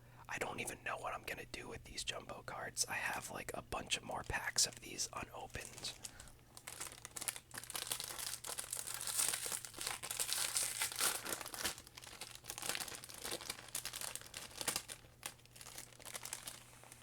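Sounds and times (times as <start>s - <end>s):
plastic packaging crinkling: 4.0s - 17.0s.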